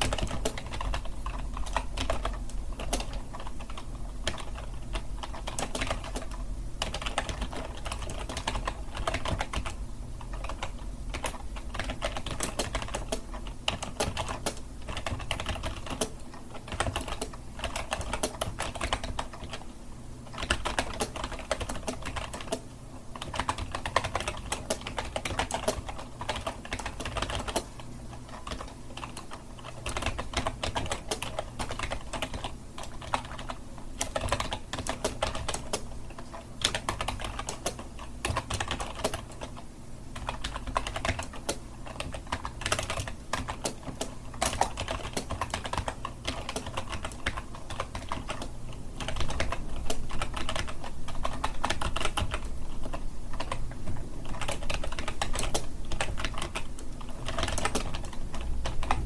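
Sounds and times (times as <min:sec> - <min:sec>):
typing on a keyboard: 0:00.0 - 0:19.6, 0:20.3 - 0:59.0.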